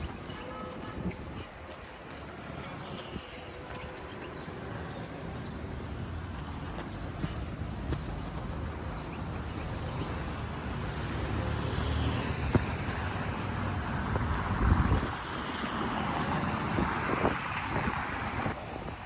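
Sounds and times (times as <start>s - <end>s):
wind rumble on microphone: 0.0s - 19.0s
car passing by: 8.7s - 19.0s.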